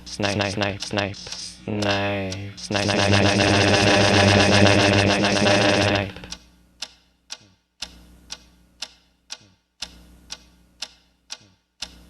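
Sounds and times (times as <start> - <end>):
faint low hum: 0.0 - 6.4
clock ticking: 0.0 - 12.0.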